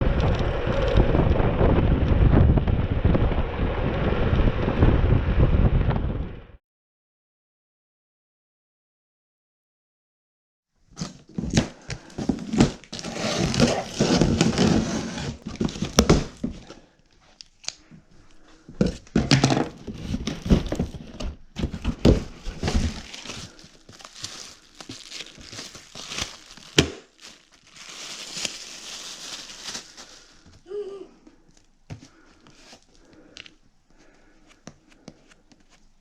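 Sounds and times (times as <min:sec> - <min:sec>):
packaging crinkling and tearing: 0:11.0 - 0:30.6.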